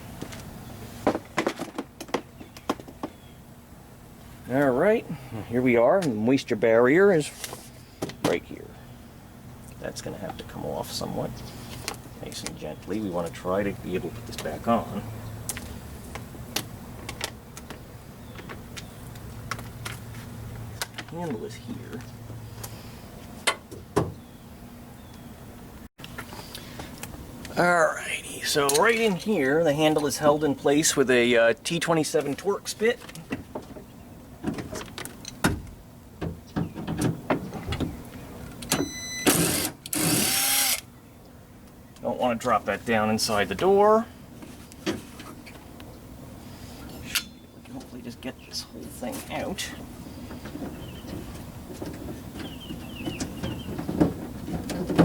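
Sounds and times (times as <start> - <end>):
cordless drill whirring: 39.3 - 40.8.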